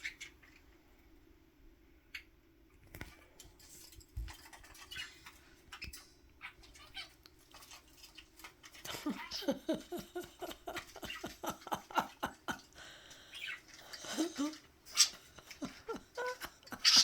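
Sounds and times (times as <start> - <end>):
budgies chirping and chattering: 0.0 - 0.6, 4.4 - 17.0.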